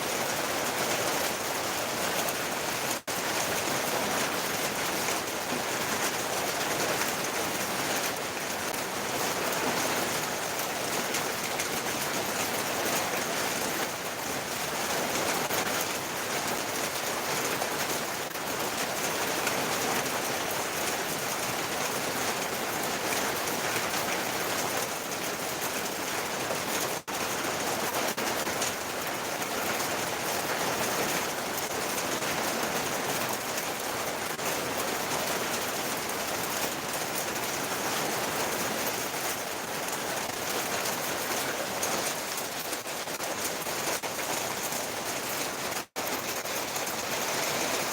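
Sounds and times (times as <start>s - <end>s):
steady rain falling: 0.0s - 47.9s.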